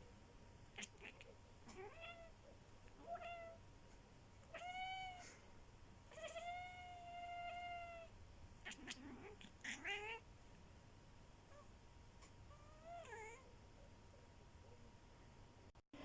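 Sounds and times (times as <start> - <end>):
cat grumbling meows: 0.8 - 2.4, 4.5 - 5.4, 6.1 - 10.2.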